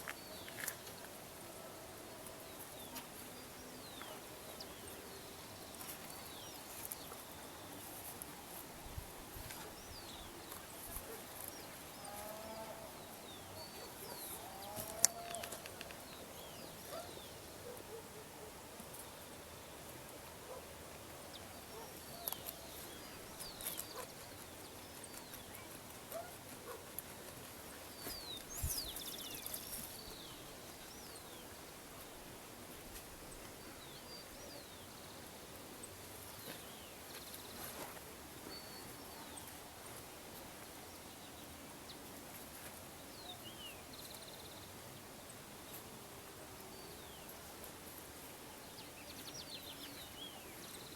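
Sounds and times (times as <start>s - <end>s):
countryside ambient hiss: 0.0s - 50.9s.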